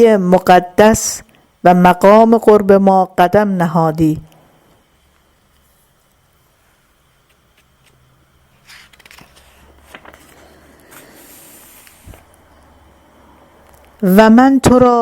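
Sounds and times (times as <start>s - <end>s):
low steady hum: 0.0s - 15.0s
soft rustling: 5.5s - 12.4s.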